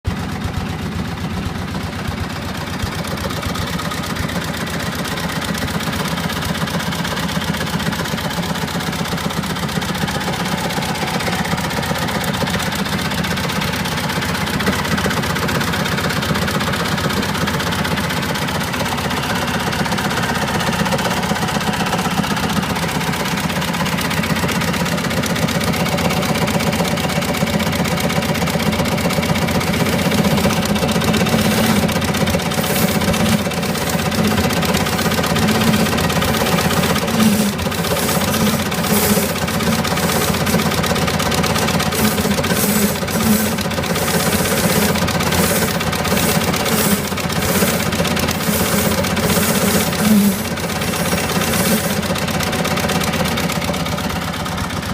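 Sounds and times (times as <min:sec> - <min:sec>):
tracked vehicle engine running: 0:00.0 - 0:54.9
continuous grinding noise: 0:25.3 - 0:54.9.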